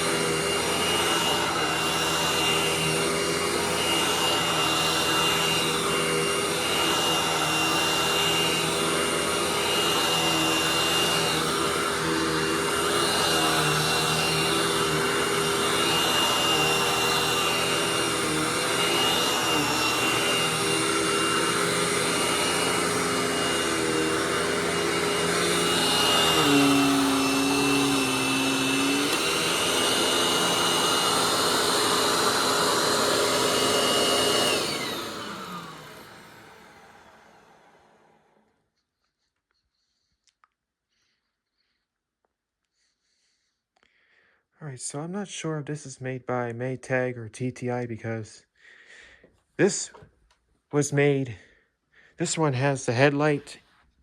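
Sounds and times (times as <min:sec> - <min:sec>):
upright vacuum cleaner running: 0:00.0 - 0:38.5
vacuum motor winding down: 0:00.0 - 0:38.5.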